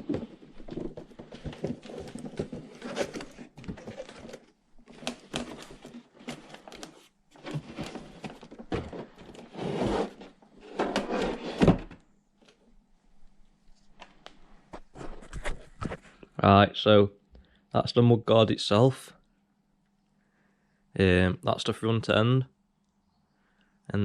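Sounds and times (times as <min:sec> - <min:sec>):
cardboard box being opened: 0:00.0 - 0:11.8
rustling and scraping packaging: 0:00.0 - 0:12.6, 0:13.7 - 0:16.3.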